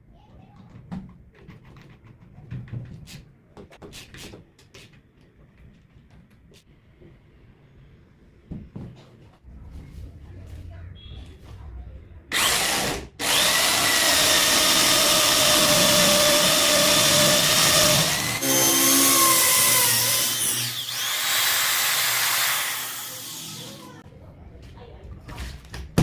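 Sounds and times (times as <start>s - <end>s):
electric drill running: 12.3s - 23.9s.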